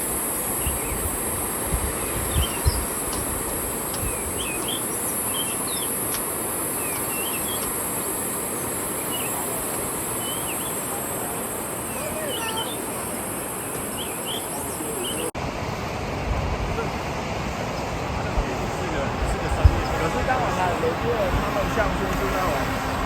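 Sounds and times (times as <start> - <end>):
high-pitched insect drone: 0.0 - 15.3
rushing background noise: 0.0 - 23.0
bird chirps: 1.8 - 3.2, 3.9 - 15.3.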